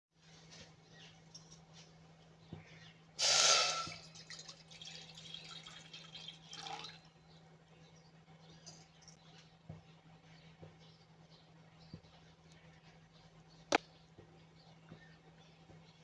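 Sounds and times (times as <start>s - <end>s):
water splashing into a pot: 3.2s - 7.0s
water trickling and dripping: 3.7s - 7.1s.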